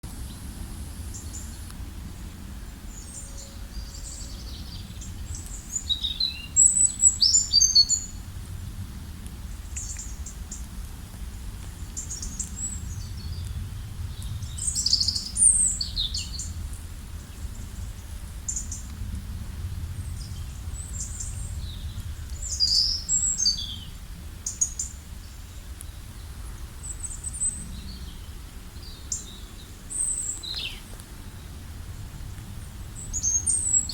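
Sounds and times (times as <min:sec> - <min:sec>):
low background rumble: 0:00.0 - 0:33.9
songbirds chirping and singing: 0:01.1 - 0:08.2, 0:20.0 - 0:31.6.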